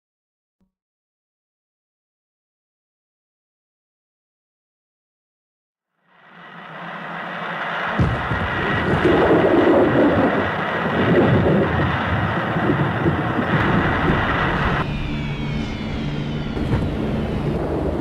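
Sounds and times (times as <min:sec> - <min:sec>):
low rumbling roar: 0:06.1 - 0:18.0.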